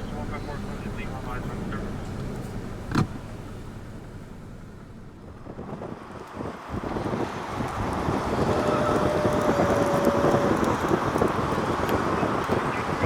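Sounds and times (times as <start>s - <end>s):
strong wind buffeting microphone: 5.0s - 13.0s.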